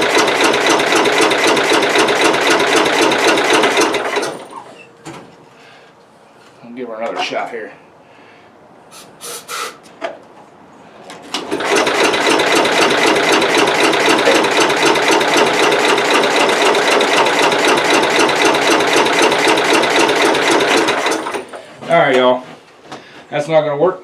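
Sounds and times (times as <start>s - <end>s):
engine cranked by starter: 0.0s - 4.8s, 11.2s - 21.7s.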